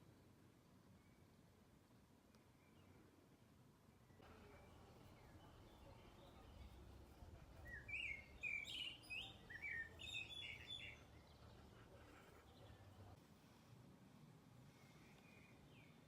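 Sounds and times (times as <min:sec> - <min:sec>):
songbird chirping: 0:02.3 - 0:13.2.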